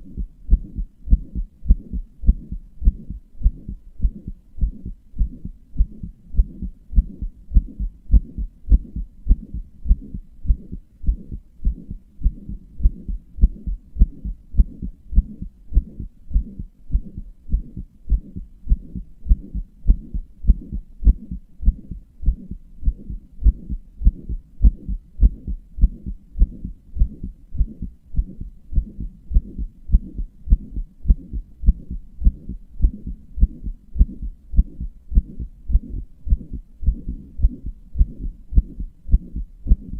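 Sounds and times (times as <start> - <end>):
heartbeat thuds: 0.0 - 39.9
soft low whooshing: 0.0 - 39.9.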